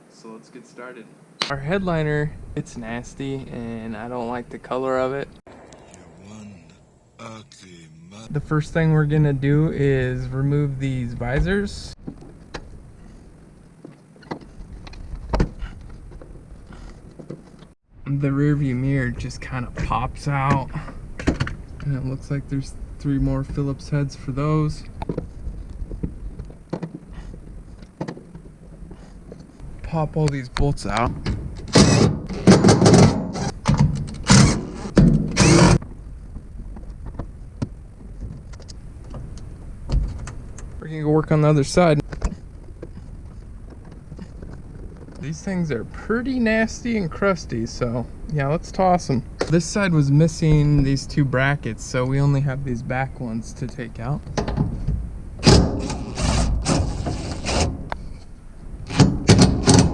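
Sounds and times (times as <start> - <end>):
power driver whirring: 31.7 - 32.4, 34.2 - 35.8.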